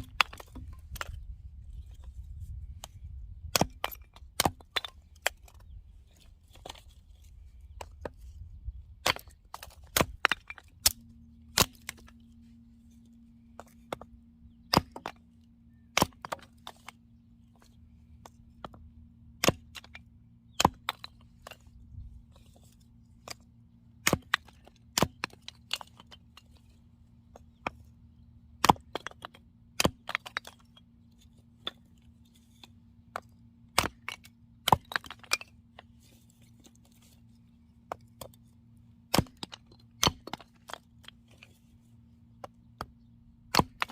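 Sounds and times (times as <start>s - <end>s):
axe splitting wood: 0.0s - 1.2s, 2.8s - 5.6s, 9.0s - 12.1s, 13.6s - 15.2s, 15.9s - 16.9s, 19.4s - 20.0s, 20.6s - 21.6s, 24.0s - 26.2s, 28.6s - 30.6s, 33.1s - 35.5s, 39.1s - 40.8s, 42.4s - 43.9s
low steady hum: 0.0s - 43.9s.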